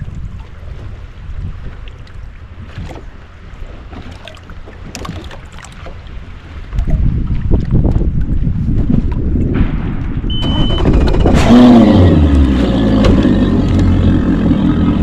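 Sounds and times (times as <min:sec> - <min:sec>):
short warning beep: 0:10.3 - 0:11.0
outboard motor running: 0:10.3 - 0:15.0.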